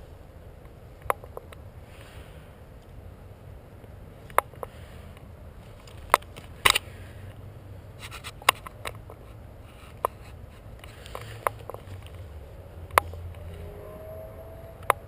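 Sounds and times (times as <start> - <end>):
low steady rumble: 0.0 - 15.0
sharp clicks and snaps: 0.6 - 1.6, 3.8 - 6.8, 8.0 - 12.2, 12.9 - 13.5, 14.8 - 15.0.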